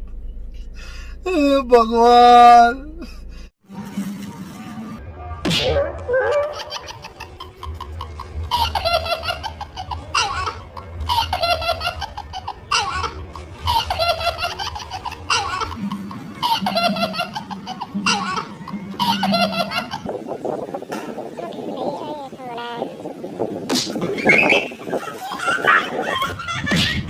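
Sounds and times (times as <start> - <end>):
low steady hum: 0.0 - 3.5
high-pitched laugh: 6.4 - 20.2, 24.1 - 27.0.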